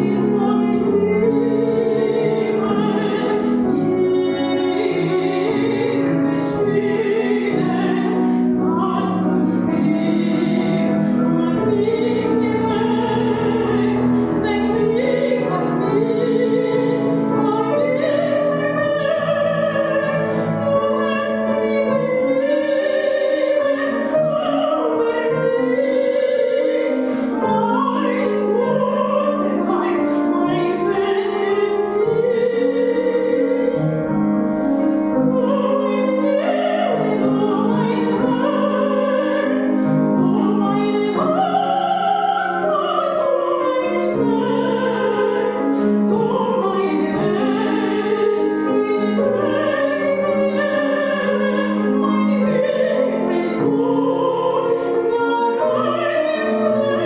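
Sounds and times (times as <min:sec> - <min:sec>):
piano accompaniment: 0:00.0 - 0:57.0.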